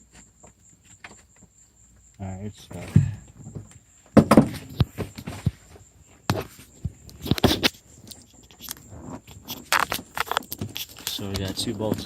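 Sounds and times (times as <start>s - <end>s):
car seat knocking and clunking: 2.8s - 5.4s.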